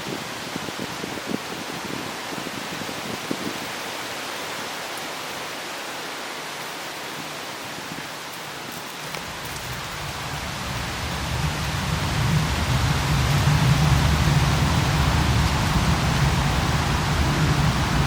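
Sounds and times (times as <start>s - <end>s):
distant city ambience hiss: 3.7s - 18.0s
low rumble: 9.3s - 18.0s.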